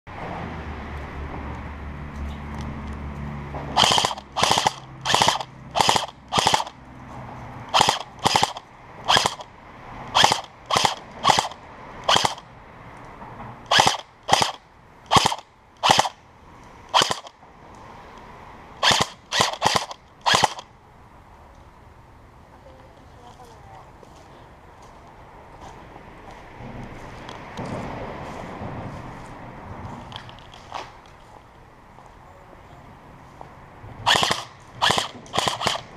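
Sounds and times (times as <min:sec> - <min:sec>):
airsoft gun firing: 0:03.8 - 0:06.7, 0:07.7 - 0:09.4, 0:10.2 - 0:12.4, 0:13.7 - 0:16.2, 0:16.9 - 0:17.3, 0:18.8 - 0:20.6, 0:34.1 - 0:35.9.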